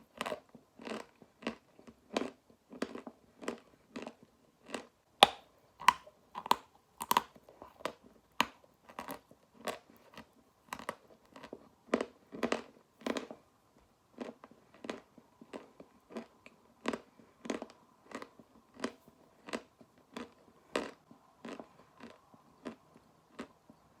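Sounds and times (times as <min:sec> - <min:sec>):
chalk being chewed crunching: 0:00.2 - 0:13.3.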